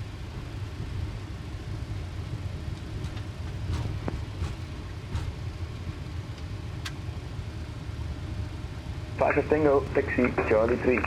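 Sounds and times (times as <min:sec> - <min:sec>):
jet cockpit rumble: 0:00.0 - 0:11.0
faint clicks: 0:06.4 - 0:07.0.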